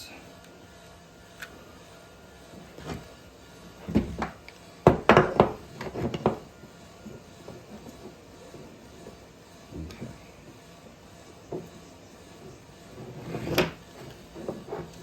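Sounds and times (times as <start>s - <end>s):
hard objects knocking on work surface: 3.9s - 6.5s.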